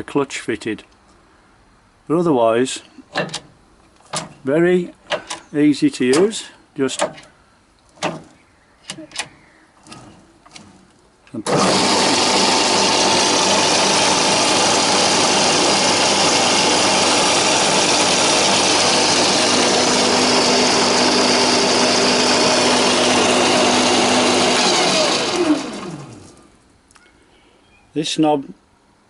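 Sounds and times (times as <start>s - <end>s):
lathe motor whirring: 11.5s - 26.5s.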